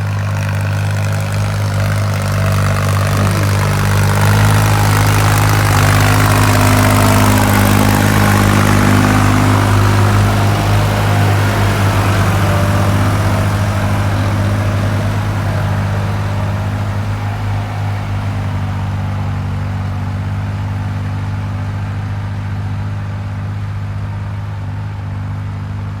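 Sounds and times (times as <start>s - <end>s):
engine humming: 0.0s - 26.0s.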